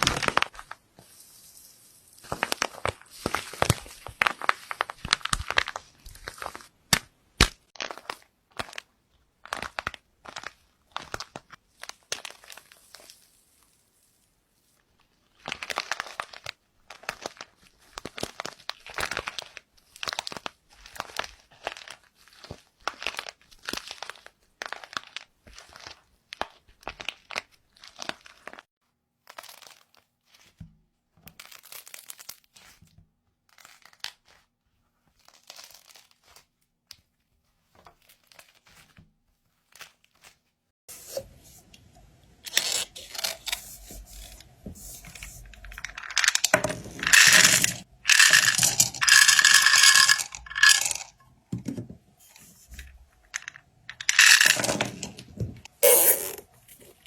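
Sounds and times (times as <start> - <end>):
crisp material crunching: 0.0 - 6.7.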